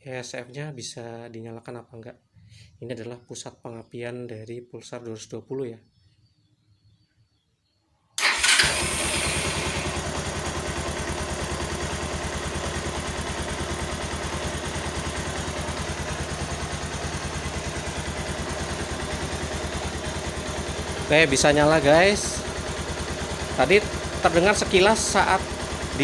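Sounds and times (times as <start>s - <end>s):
motorcycle engine starting and idling: 8.2s - 26.0s.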